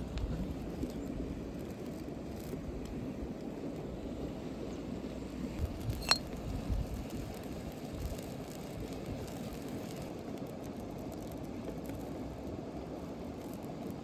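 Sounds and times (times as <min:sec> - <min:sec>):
sharp clink: 0:05.9 - 0:06.3.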